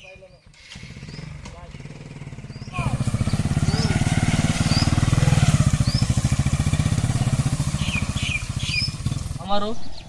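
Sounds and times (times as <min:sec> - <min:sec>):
bird chirps: 0:00.0 - 0:10.0
motorcycle engine running: 0:00.0 - 0:10.0.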